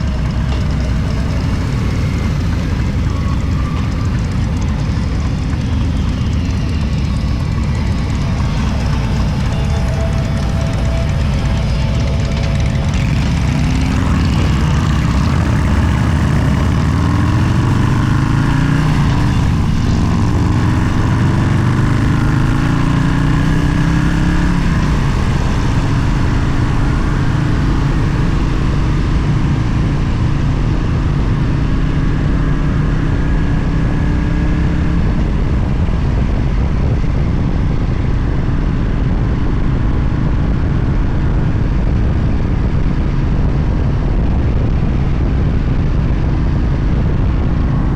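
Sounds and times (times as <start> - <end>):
motorcycle engine accelerating: 0.0 - 47.9
wind roar: 0.0 - 47.9.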